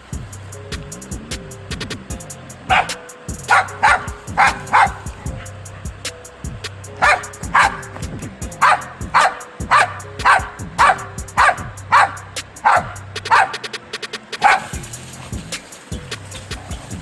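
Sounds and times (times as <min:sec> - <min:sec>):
background music: 0:00.0 - 0:17.0
dog barking: 0:02.7 - 0:06.0, 0:07.0 - 0:08.0, 0:08.6 - 0:13.7, 0:14.4 - 0:15.4.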